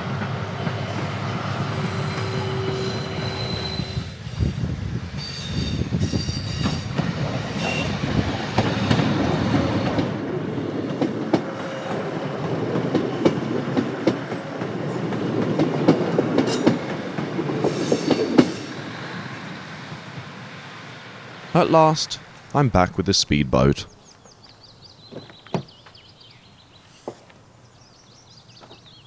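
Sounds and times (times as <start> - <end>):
train running on rails: 0.0 - 21.1.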